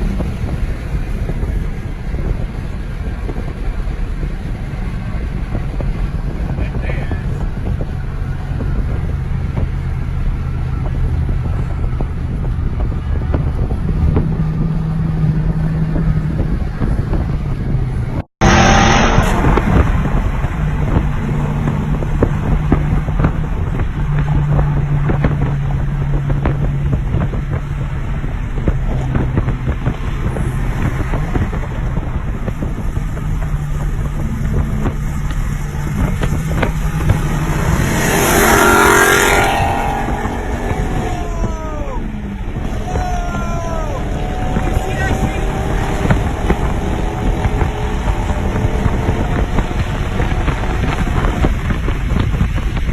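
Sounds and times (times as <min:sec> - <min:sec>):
car engine running: 0:00.0 - 0:52.9
rising sweep: 0:29.9 - 0:51.2.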